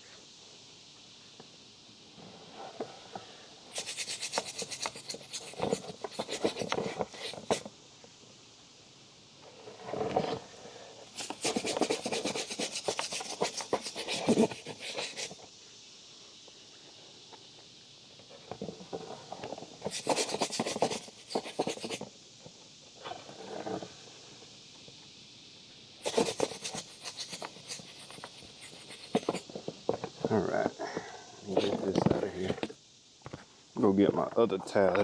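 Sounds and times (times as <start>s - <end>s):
rubbing and rustling handling noise: 3.7s - 7.7s, 11.1s - 15.4s, 18.6s - 22.1s, 26.0s - 30.3s.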